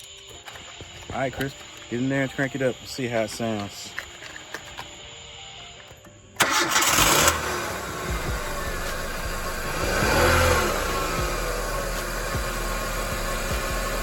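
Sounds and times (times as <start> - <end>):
car engine running: 6.4 - 14.0
starter cranking engine: 6.4 - 14.0.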